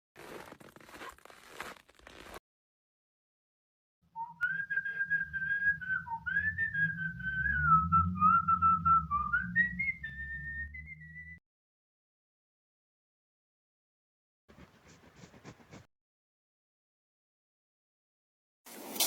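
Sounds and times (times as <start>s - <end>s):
person whistling a tune: 4.1s - 11.4s
low rumble: 5.1s - 11.4s.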